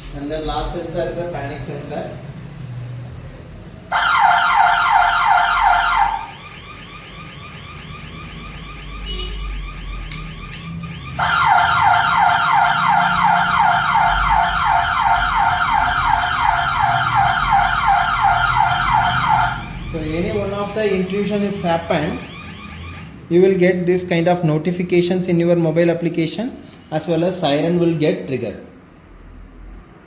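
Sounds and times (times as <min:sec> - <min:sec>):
electronic alarm siren: 0:03.9 - 0:23.4.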